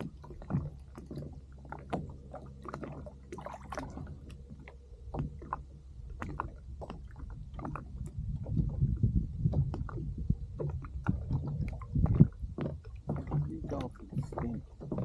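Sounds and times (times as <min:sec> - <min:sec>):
steady low rumble: 0:00.0 - 0:15.0
water lapping against kayak hull: 0:00.0 - 0:15.0
light knocks and clicks: 0:10.6 - 0:15.0.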